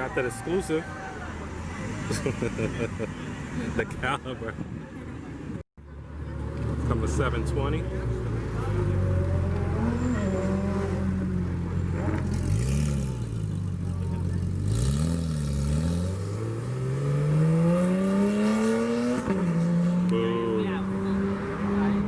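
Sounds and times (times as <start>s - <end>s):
car engine revving and accelerating: 6.5s - 22.0s.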